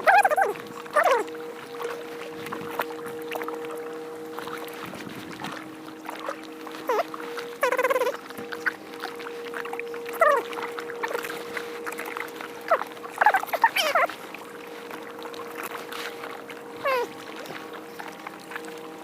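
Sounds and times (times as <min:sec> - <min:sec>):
gulls mewing cries: 0:00.0 - 0:01.4, 0:06.3 - 0:09.0, 0:12.6 - 0:14.2, 0:16.7 - 0:17.3.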